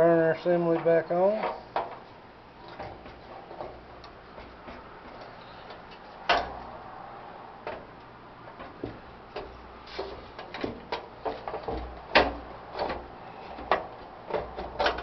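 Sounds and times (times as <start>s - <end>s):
light metal clicks and knocks: 7.6s - 15.0s.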